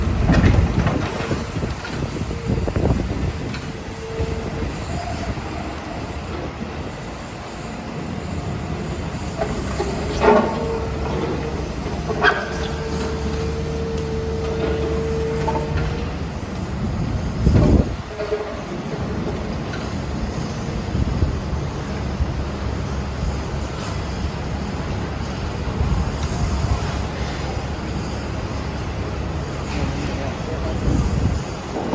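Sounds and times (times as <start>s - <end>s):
machine whine: 7.5s - 17.9s
diesel engine hum: 8.1s - 18.2s.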